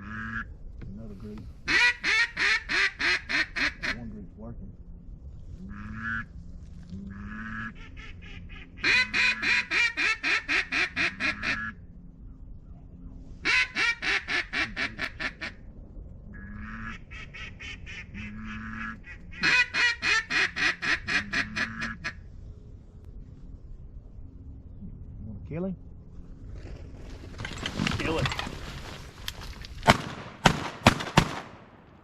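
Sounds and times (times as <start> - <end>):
duck call quacks: 1.7 - 4.0, 5.7 - 6.3, 7.1 - 11.8, 13.4 - 15.6, 16.4 - 22.2.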